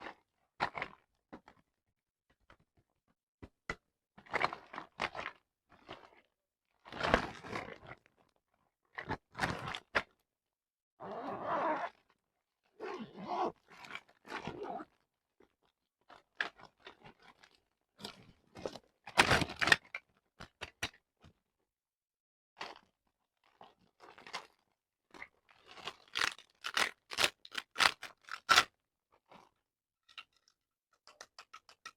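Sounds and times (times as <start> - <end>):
packaging crinkling and rustling: 25.9 - 28.7
sharp clicks and crunches: 26.0 - 28.7, 30.1 - 31.9.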